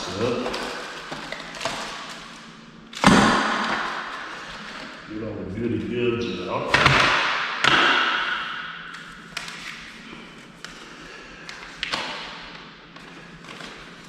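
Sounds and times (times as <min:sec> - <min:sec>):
packaging rustling: 0:00.0 - 0:05.0, 0:12.9 - 0:14.0.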